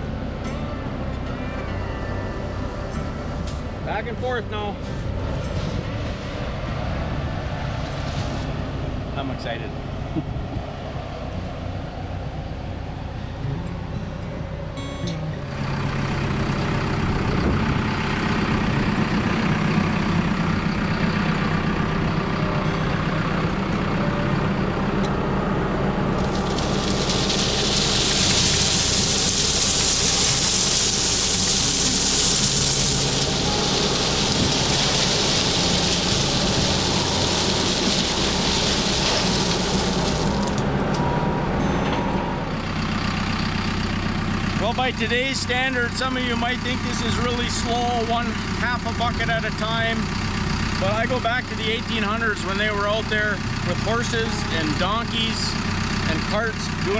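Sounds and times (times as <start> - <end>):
diesel engine running: 0.0 - 56.9
loud even hiss: 26.2 - 40.5.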